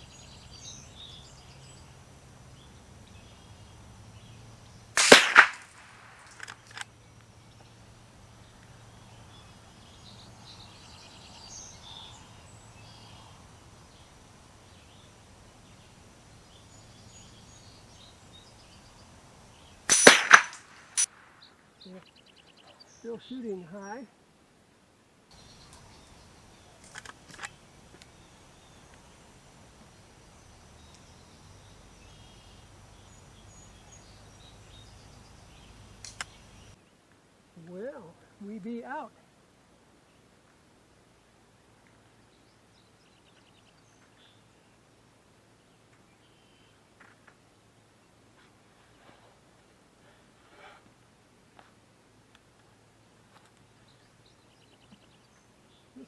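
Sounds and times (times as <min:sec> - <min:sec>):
sharp crack: 0:04.9 - 0:07.0, 0:19.8 - 0:21.4, 0:35.8 - 0:36.4
rifle shot: 0:05.0 - 0:06.9, 0:19.9 - 0:21.3
sharp click: 0:19.9 - 0:21.1, 0:36.0 - 0:36.4.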